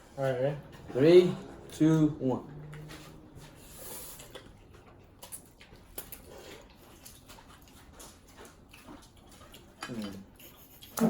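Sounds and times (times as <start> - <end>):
utensils clinking against bowls: 9.6 - 11.0.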